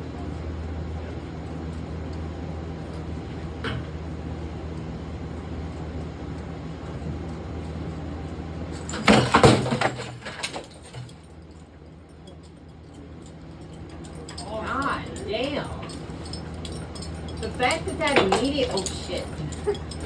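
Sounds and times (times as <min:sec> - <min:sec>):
ceiling fan humming: 0:00.0 - 0:20.0
object crashing into fan blades: 0:08.8 - 0:11.1.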